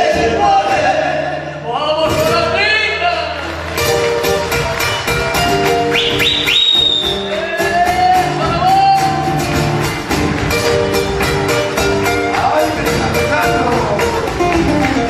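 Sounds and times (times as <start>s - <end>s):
folk band playing with guitar: 0.0s - 15.0s
quick high calls: 5.8s - 7.3s.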